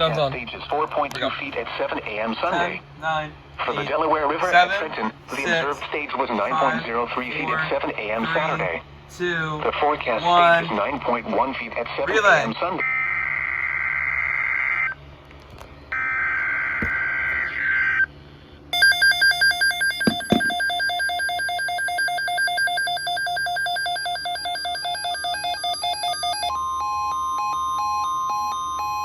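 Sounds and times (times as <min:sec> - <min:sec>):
steady warning tone: 0:00.0 - 0:29.0
electronic alarm beeping rapidly: 0:18.7 - 0:29.0.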